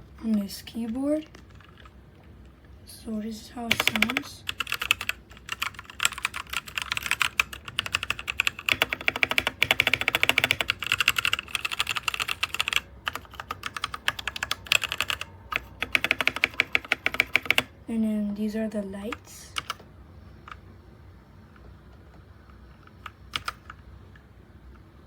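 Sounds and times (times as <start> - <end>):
mechanical keyboard typing: 1.2 - 2.0, 3.7 - 17.7, 19.0 - 19.8, 22.7 - 23.8.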